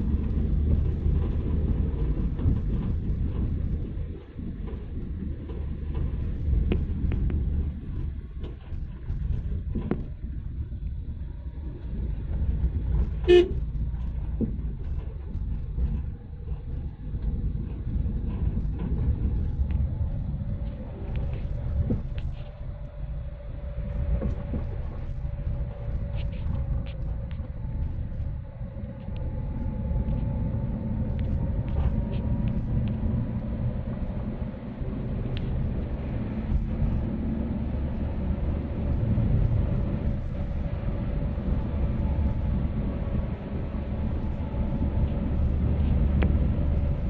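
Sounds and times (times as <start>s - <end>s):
car driving rumble: 0.0s - 47.0s
car horn toot: 13.2s - 13.6s
light ticks: 35.2s - 35.9s.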